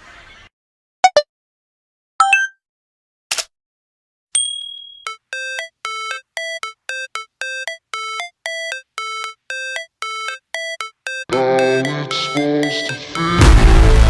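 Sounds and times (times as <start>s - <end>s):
electronic bell-like melody: 4.4s - 13.7s
beat and bass: 5.4s - 14.0s.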